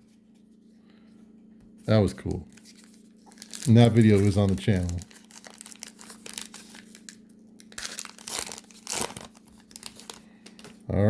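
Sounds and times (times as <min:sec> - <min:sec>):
low electrical hum: 0:00.0 - 0:11.0
wrappers torn and crinkled: 0:02.4 - 0:10.8.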